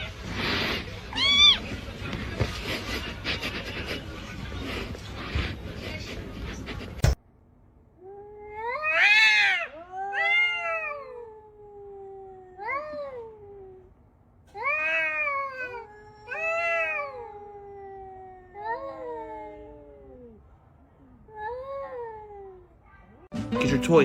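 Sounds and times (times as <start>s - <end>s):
cat yowling: 1.1s - 1.7s, 8.0s - 13.8s, 14.5s - 20.4s.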